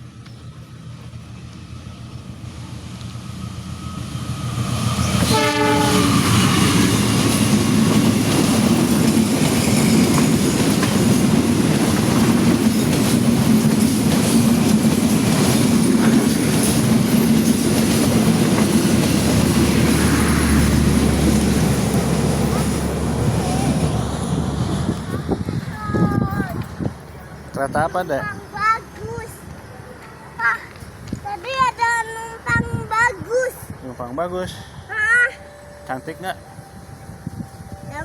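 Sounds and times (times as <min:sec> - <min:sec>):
passenger train passing: 0:00.0 - 0:38.0
train horn blast: 0:05.0 - 0:07.0.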